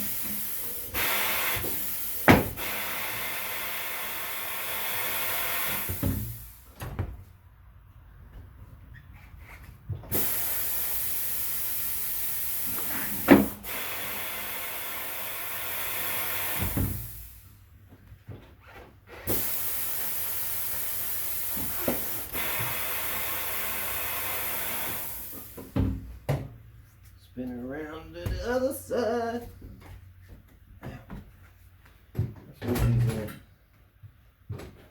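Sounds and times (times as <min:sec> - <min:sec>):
compressed air hissing: 0:00.0 - 0:06.8, 0:10.1 - 0:17.6, 0:19.3 - 0:25.8.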